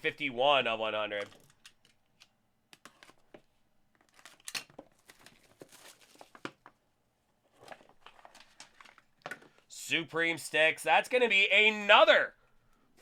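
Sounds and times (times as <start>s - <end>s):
packaging crinkling and tearing: 4.0s - 6.7s.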